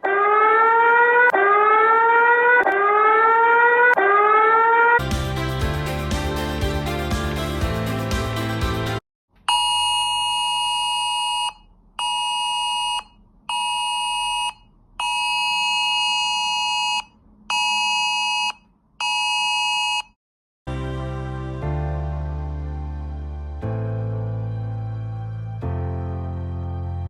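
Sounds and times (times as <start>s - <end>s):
background music: 5.0s - 9.0s, 20.7s - 27.0s.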